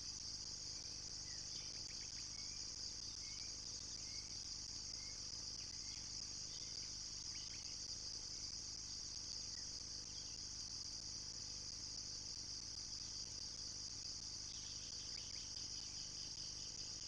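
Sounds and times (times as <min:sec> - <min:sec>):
insects trilling: 0:00.0 - 0:17.0
faint bird chirps: 0:01.2 - 0:07.8, 0:14.4 - 0:17.0.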